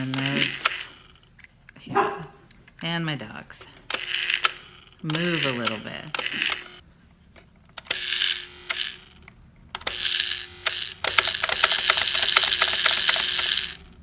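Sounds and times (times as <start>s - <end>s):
toy motor humming and clicking: 0.0s - 1.5s, 3.6s - 6.8s, 7.7s - 14.0s.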